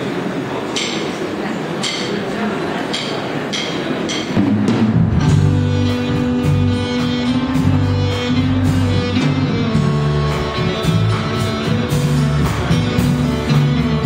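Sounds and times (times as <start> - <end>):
guitar music: 4.9 - 14.0
steady bass line: 4.9 - 14.0.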